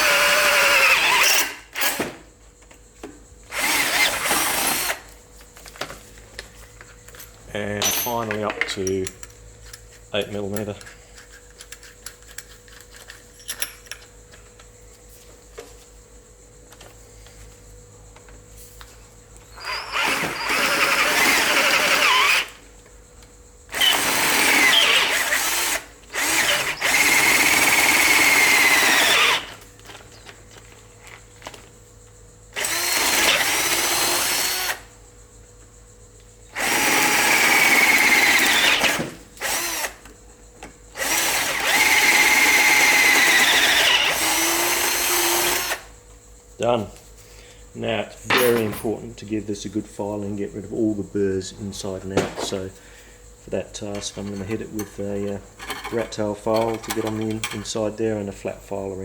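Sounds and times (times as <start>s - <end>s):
drill bit squealing: 0.0s - 1.6s, 3.6s - 4.9s, 19.5s - 22.5s, 23.7s - 29.5s, 32.6s - 34.8s, 36.6s - 39.9s, 41.0s - 45.8s
cordless drill boring metal: 0.0s - 2.1s, 3.5s - 5.0s, 19.5s - 22.6s, 23.7s - 29.6s, 32.6s - 34.9s, 36.5s - 40.0s, 41.0s - 45.9s.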